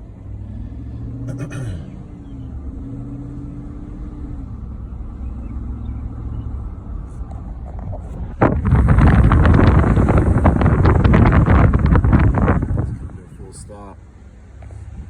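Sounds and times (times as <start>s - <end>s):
car engine and road hum: 0.0s - 15.0s
wind buffeting microphone: 3.7s - 13.8s.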